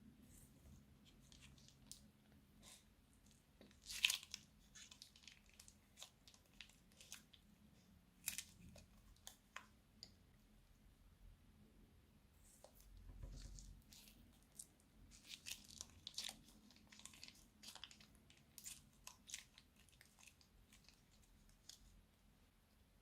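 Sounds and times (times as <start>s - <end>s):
slime crunches: 3.7s - 7.4s, 8.2s - 9.6s, 13.3s - 21.9s.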